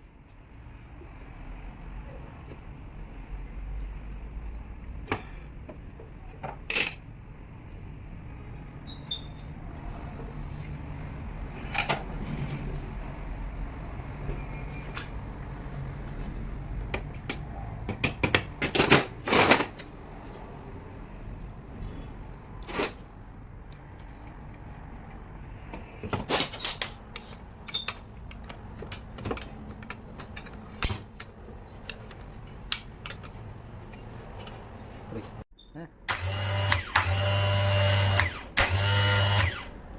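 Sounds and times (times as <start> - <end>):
metal tools clicking and knocking: 6.4 - 7.0, 26.5 - 33.4.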